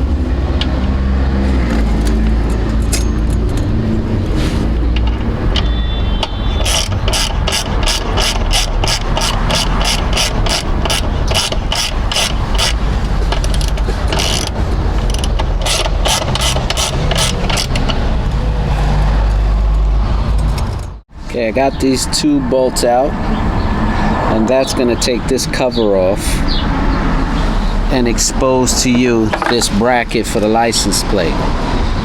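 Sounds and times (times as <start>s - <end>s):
ratchet wrench clicking: 5.0s - 18.0s.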